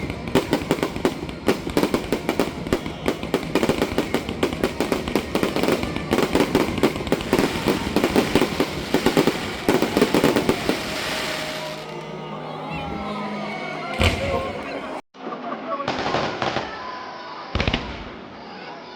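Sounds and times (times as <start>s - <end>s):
fireworks bangs and crackles: 0.0s - 12.0s, 15.9s - 16.8s, 17.5s - 18.3s.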